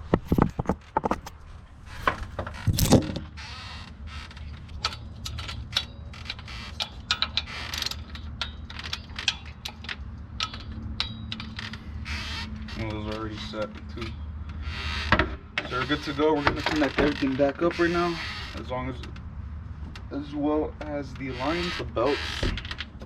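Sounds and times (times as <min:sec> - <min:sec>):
socket wrench ratcheting: 0:04.2 - 0:12.6.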